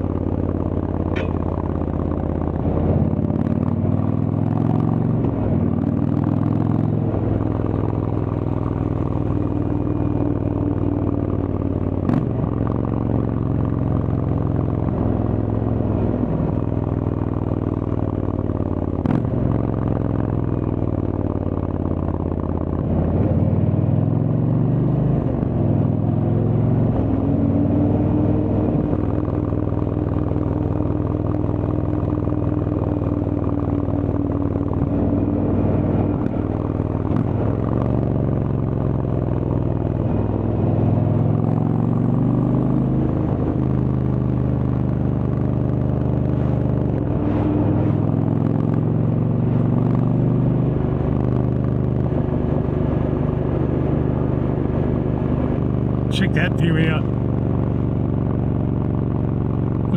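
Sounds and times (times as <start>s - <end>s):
motorcycle engine running: 0.0s - 23.0s.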